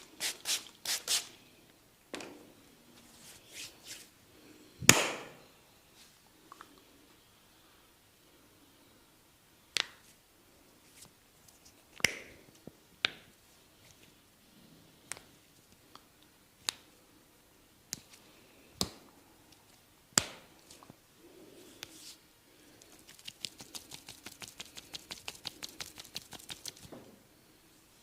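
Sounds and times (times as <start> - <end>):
hand snaps: 9.8 - 10.0, 12.0 - 12.4.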